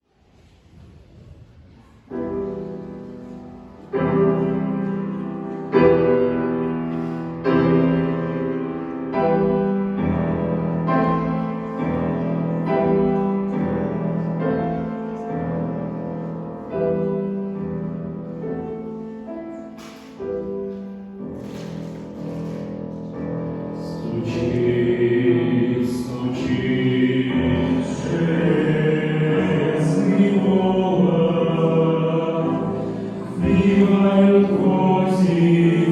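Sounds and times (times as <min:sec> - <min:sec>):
piano chords: 0:01.7 - 0:35.9
choir singing a hymn: 0:23.7 - 0:35.9.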